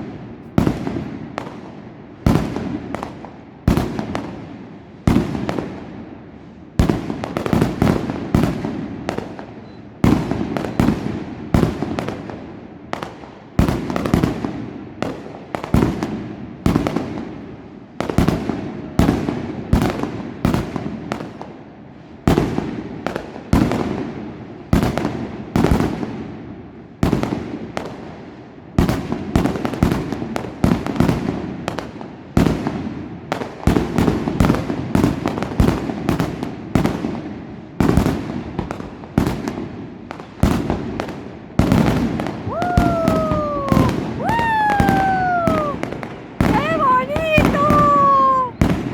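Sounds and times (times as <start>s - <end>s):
fireworks bangs: 40.2s - 48.9s.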